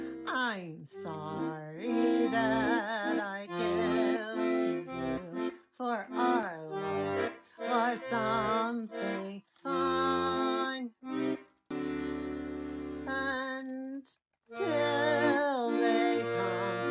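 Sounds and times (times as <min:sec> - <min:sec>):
held instrumental chords: 0:00.0 - 0:00.3, 0:11.1 - 0:13.2.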